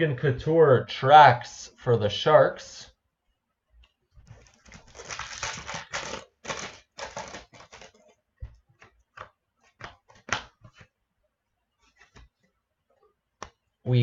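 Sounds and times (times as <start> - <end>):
cards clicking and snapping: 4.3 - 8.0, 8.8 - 10.9
foil wrapper tearing and crinkling: 4.4 - 8.0.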